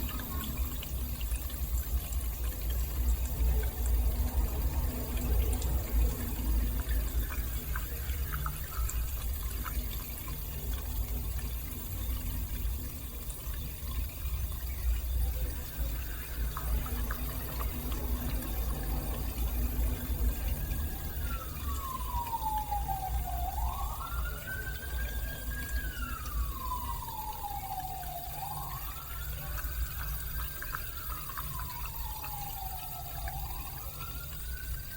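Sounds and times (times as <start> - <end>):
dishwasher running: 0.0 - 34.9
water sloshing and filling: 0.0 - 34.9
siren wailing: 15.2 - 34.9.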